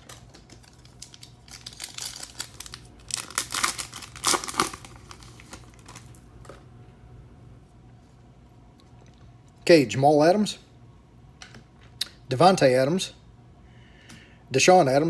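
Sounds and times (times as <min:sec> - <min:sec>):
wrapper tearing and crinkling: 0:00.0 - 0:06.3.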